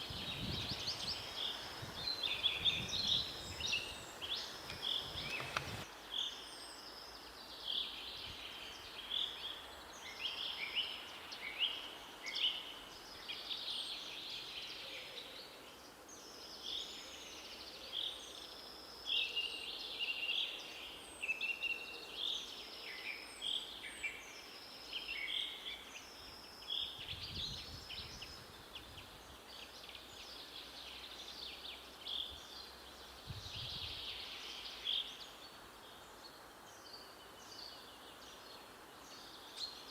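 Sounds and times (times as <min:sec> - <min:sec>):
birds singing and calling: 0:00.0 - 0:07.0
forest background noise: 0:00.0 - 0:39.9.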